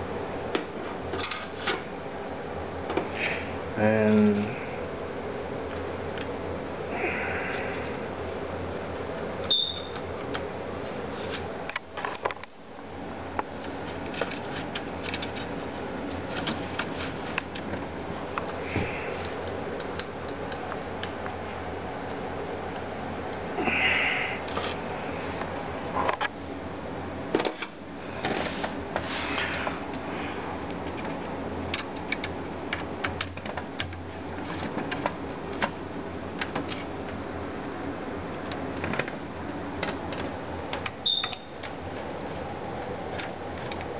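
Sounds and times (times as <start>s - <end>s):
steady low hum: 0.0s - 43.9s
high squeak: 9.5s - 10.0s, 41.0s - 41.6s.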